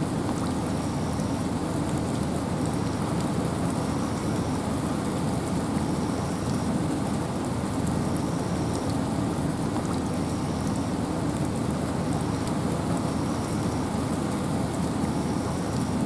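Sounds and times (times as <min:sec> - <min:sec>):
wind and rain in forest: 0:00.0 - 0:16.0
raindrop ticks: 0:00.1 - 0:03.8, 0:06.1 - 0:13.6, 0:15.7 - 0:15.9.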